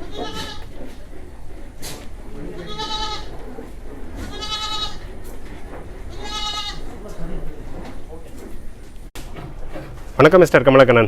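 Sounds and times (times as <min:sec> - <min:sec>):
goats bleating: 0:00.0 - 0:01.0, 0:02.6 - 0:03.5, 0:04.1 - 0:05.2, 0:06.0 - 0:07.0.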